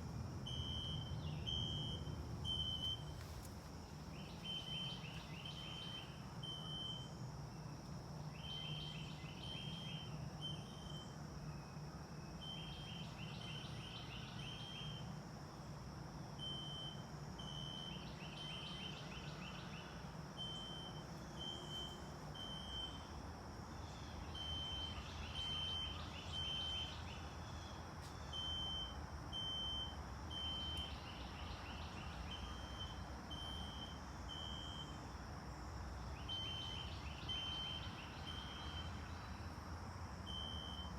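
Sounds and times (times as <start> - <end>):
low background rumble: 0.0 - 6.4.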